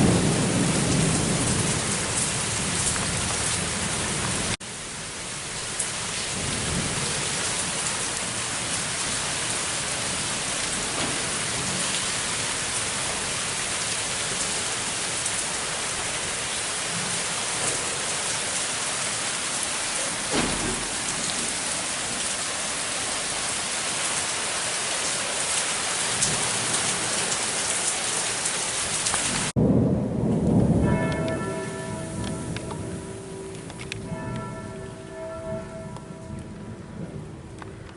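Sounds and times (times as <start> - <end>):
thunder rumbles: 0.0 - 4.6, 5.9 - 19.2, 19.8 - 22.4, 28.8 - 37.9
rain falling: 0.0 - 37.9
church bells tolling: 30.6 - 37.4.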